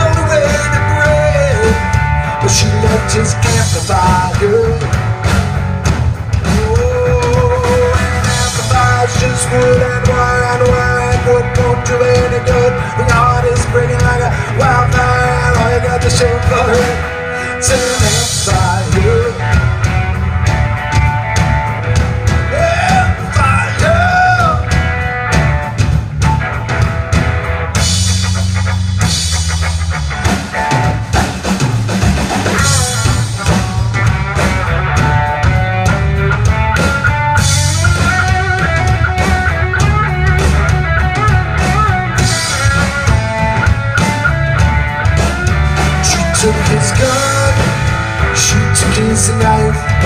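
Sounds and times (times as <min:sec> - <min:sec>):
drum kit beat: 0:00.0 - 0:50.0
live rock band playing: 0:00.0 - 0:50.0
bending melodic line: 0:32.6 - 0:50.0.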